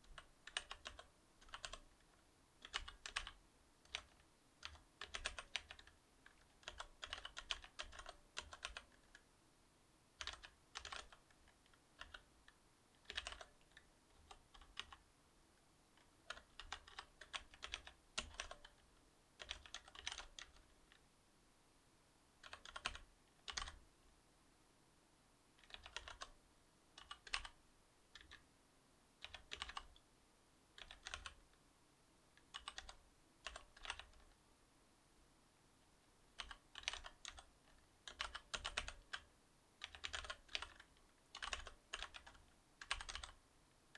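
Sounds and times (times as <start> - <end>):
typing on mechanical keyboard: 0.0 - 1.8, 2.6 - 9.2, 10.2 - 12.3, 13.0 - 15.0, 16.0 - 18.8, 19.4 - 21.0, 22.4 - 23.8, 25.6 - 26.4, 27.0 - 28.4, 29.2 - 30.0, 30.8 - 31.4, 32.4 - 34.4, 36.4 - 43.4.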